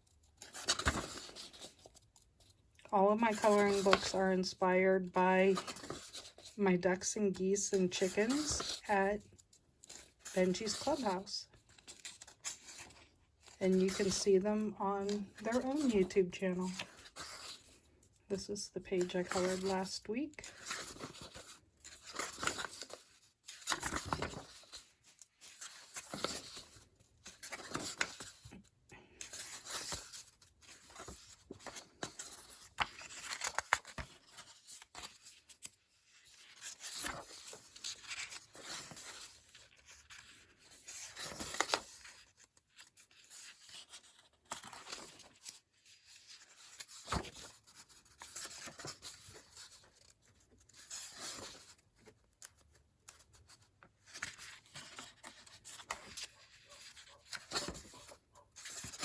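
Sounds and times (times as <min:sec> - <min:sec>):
book pages turning: 0:00.1 - 0:04.2, 0:05.5 - 0:06.6, 0:07.8 - 0:59.0.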